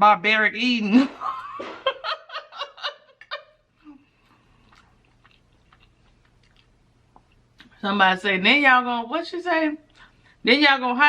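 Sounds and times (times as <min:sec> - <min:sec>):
woman giggling: 0:00.9 - 0:04.0
close-up chewing: 0:04.1 - 0:07.8.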